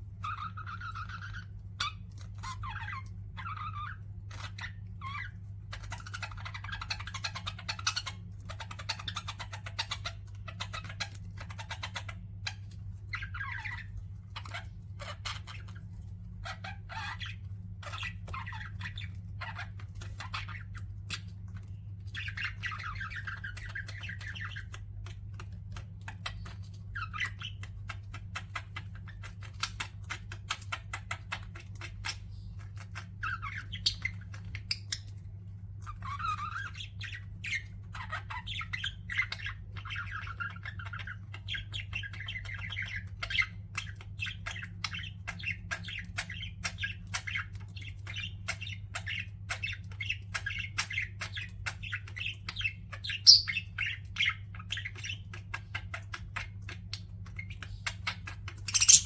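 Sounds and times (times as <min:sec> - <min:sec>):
budgerigars chirping and warbling: 0:00.0 - 0:59.0.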